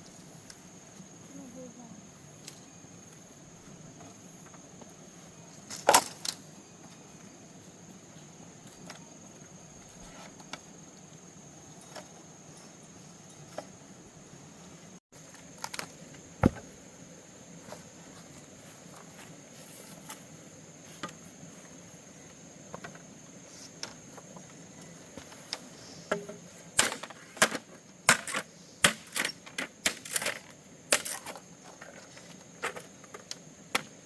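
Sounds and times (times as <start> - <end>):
high insect buzz: 15.2 - 27.2
blade striking bamboo: 16.4 - 16.8, 26.8 - 29.2.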